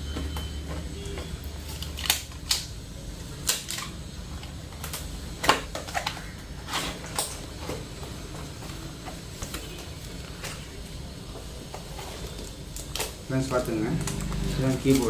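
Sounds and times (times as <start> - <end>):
packaging crinkling: 1.6 - 4.0, 12.1 - 15.0.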